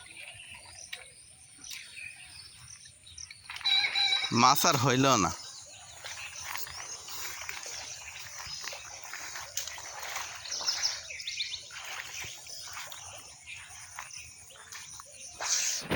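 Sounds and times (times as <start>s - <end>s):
water splashing and trickling: 0.0s - 15.9s
short bird chirps: 3.3s - 4.6s.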